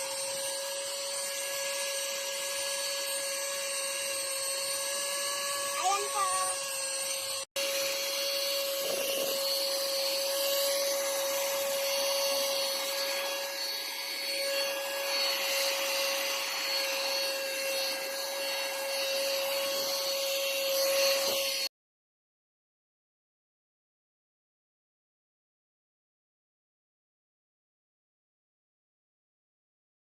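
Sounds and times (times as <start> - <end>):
mini vacuum cleaner motor whine: 0.0 - 21.7.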